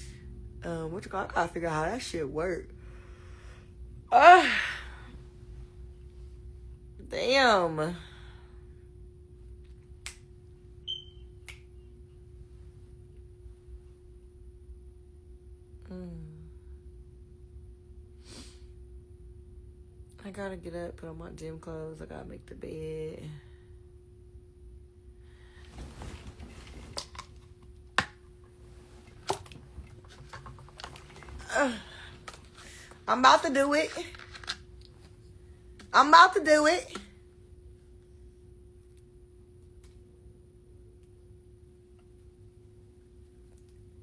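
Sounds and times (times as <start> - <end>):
faint steady hum: 0.0 - 44.0
rustling handling noises: 25.6 - 27.7.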